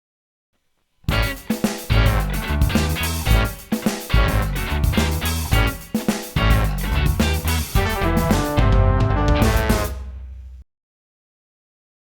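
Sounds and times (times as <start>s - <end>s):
upbeat music with heavy bass: 1.1s - 10.4s.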